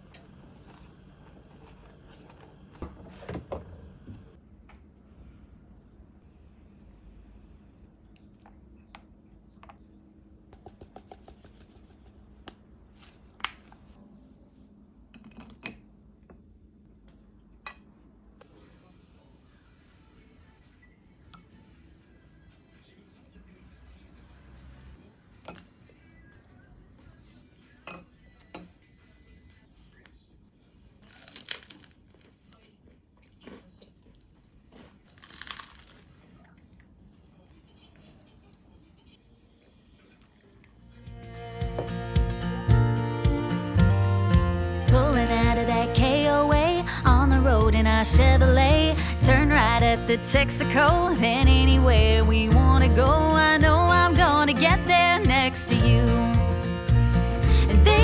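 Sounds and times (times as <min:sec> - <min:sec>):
bagel crunching: 0:31.0 - 0:32.4, 0:33.3 - 0:36.1.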